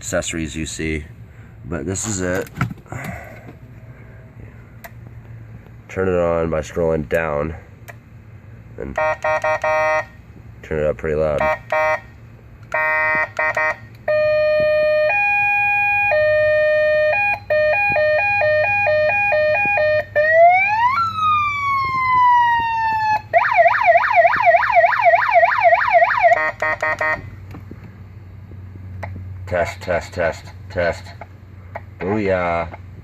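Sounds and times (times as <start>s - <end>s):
electronic police siren: 12.7s - 27.3s.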